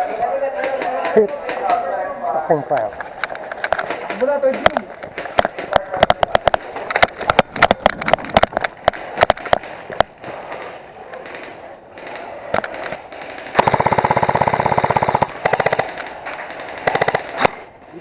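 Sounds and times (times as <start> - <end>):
airsoft gun shots: 3.8 - 17.7.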